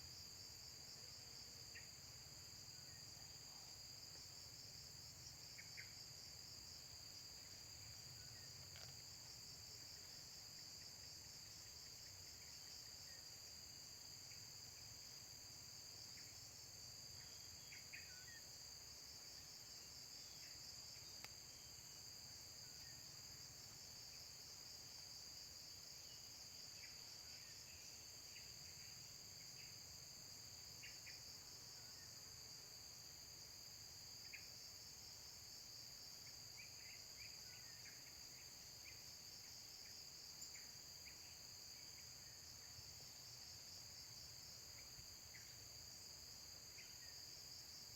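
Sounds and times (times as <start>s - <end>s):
insects chorus: 0.0s - 47.9s.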